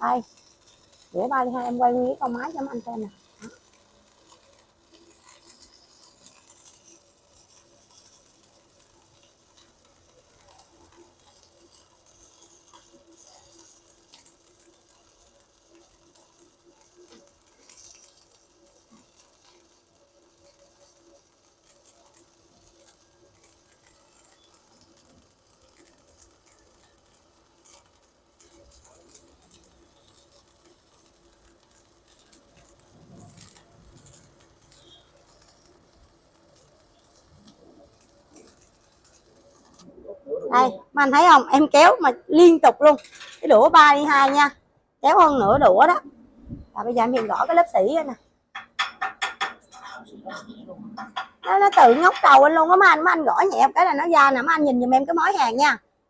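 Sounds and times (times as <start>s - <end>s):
arc welding crackling: 0.0s - 55.8s.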